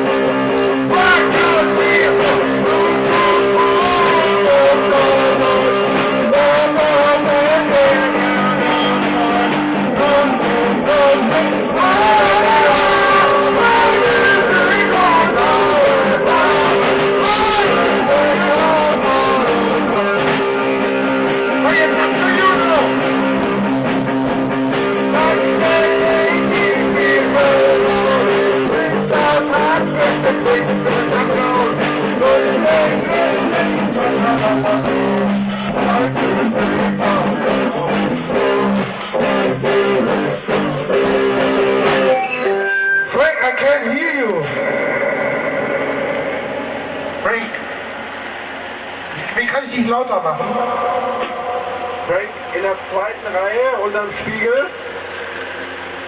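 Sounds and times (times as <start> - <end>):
rock guitar chords: 0.0 - 49.6, 50.2 - 56.0
person singing: 0.7 - 23.0, 24.8 - 38.2.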